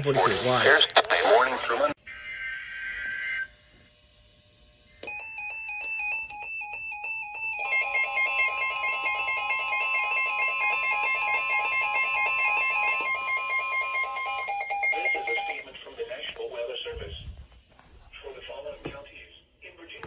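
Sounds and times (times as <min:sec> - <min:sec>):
shrill steady alarm tone: 0:02.0 - 0:15.7.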